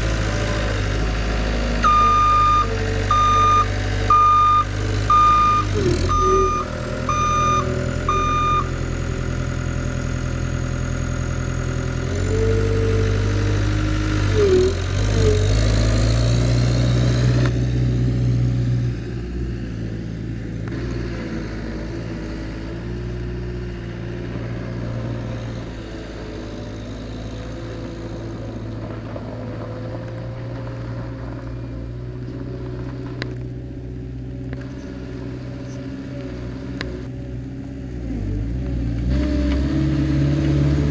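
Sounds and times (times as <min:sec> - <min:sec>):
diesel engine running: 0:00.0 - 0:40.9
backup alarm beeping: 0:01.8 - 0:08.7.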